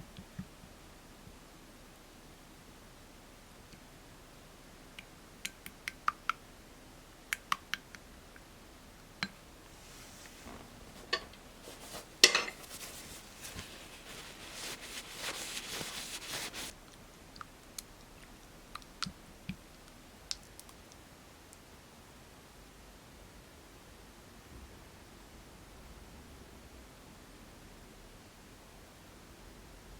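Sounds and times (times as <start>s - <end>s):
rustling stirring noise: 9.3s - 16.8s.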